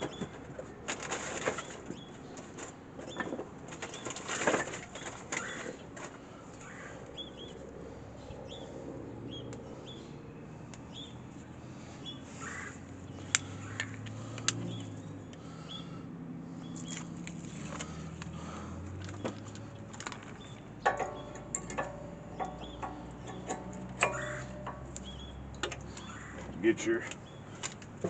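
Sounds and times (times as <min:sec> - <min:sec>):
metal clicks and clinks: 0:19.1 - 0:26.0
ringing metal knocks: 0:20.7 - 0:26.5.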